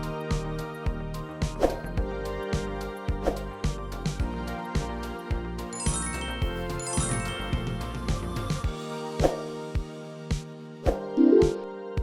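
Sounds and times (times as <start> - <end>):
held chords: 11.2 - 11.8.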